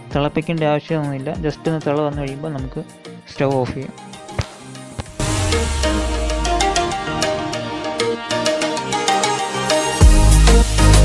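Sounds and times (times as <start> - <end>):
background music with bass line: 3.8 - 11.0
percussive hits: 4.2 - 8.5.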